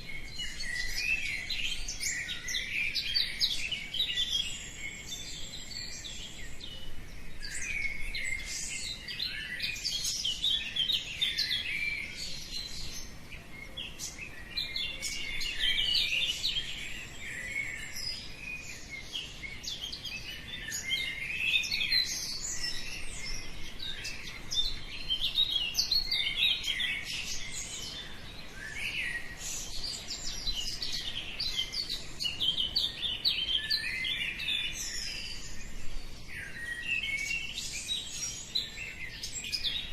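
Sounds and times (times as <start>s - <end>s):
small birds chirping and singing: 0.0s - 39.9s.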